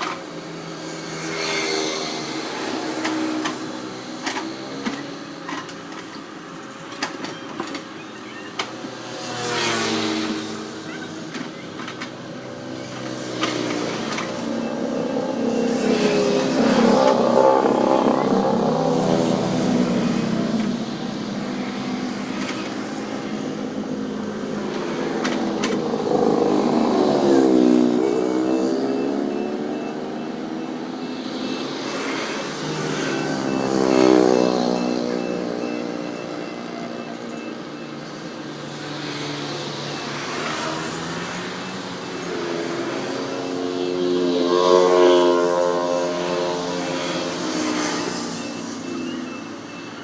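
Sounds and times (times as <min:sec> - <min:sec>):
diesel engine revving: 0:11.6 - 0:37.1.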